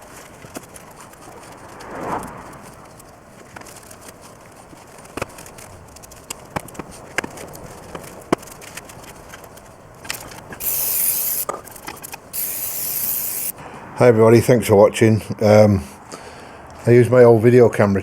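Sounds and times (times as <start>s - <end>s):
aerosol spray hissing: 10.6s - 11.5s, 12.4s - 13.6s.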